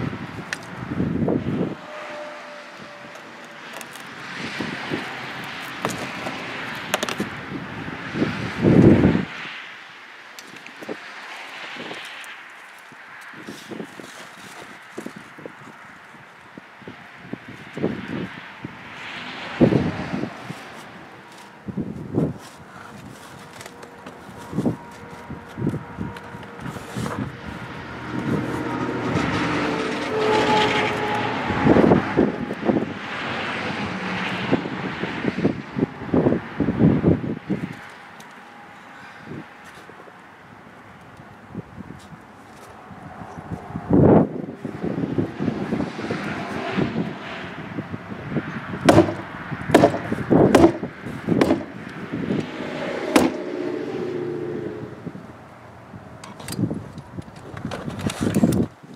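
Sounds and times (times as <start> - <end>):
staples being driven: 5.0 - 7.3, 48.9 - 51.8, 53.1 - 53.4
engine drone passing by: 24.6 - 37.4, 51.5 - 56.0
short knocks: 48.9 - 51.7.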